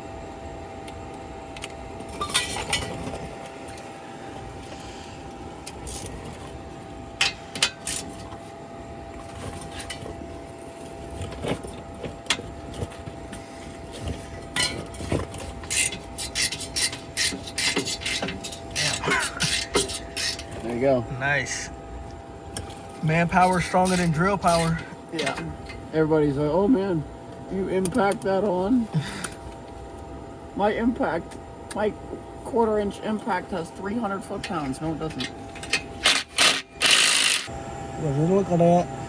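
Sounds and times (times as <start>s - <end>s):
metal hand tools clinking: 15.7s - 20.6s.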